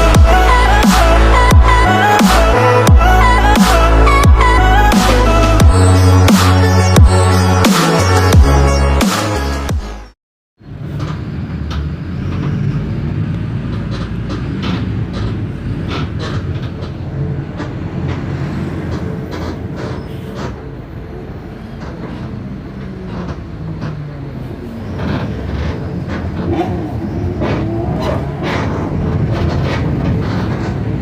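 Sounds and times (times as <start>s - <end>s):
bus diesel engine droning: 0.0s - 31.0s
bus body rattles and clicks: 10.6s - 31.0s.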